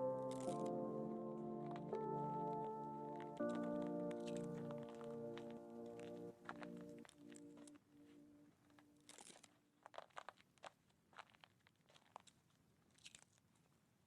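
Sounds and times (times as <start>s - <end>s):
background music: 0.0s - 9.2s
faint clicks and crinkling: 0.0s - 14.0s.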